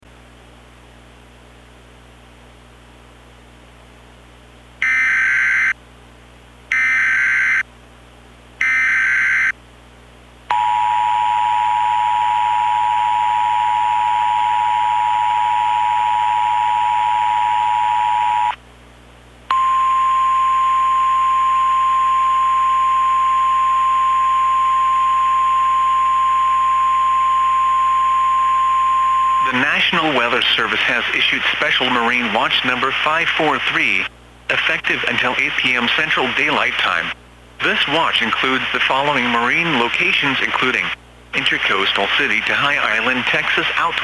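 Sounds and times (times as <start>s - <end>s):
two-tone attention signal: 4.8s - 5.7s.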